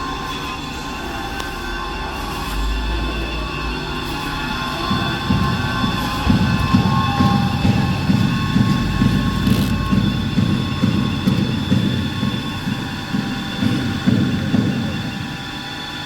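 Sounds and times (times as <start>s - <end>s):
high whine: 0.0s - 16.0s
log saw machine running: 3.0s - 16.0s
low repeating thud: 4.8s - 16.0s.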